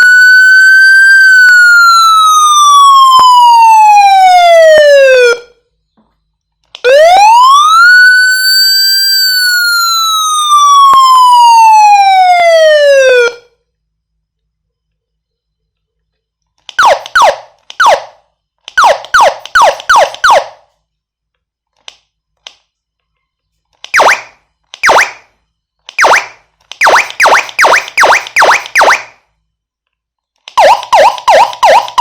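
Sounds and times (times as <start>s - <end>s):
police siren wailing: 0.0s - 5.6s, 6.8s - 13.6s, 18.8s - 20.6s, 26.0s - 29.1s, 30.6s - 32.0s.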